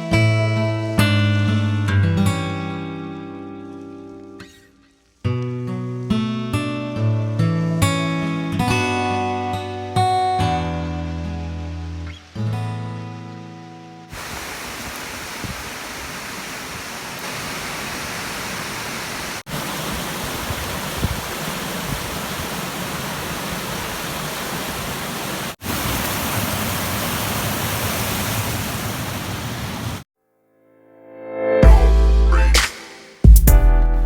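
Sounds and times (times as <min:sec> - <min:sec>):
waterfall rushing: 0:14.1 - 0:30.0.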